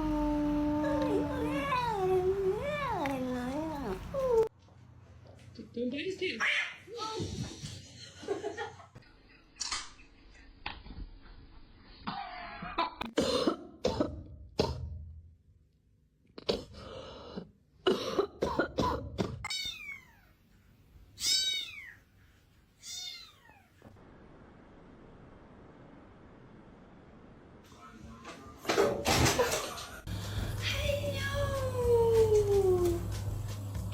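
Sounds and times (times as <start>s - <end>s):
harsh coughing: 13.0s - 14.8s, 17.8s - 19.4s
cat meowing: 21.2s - 22.0s, 22.8s - 23.8s.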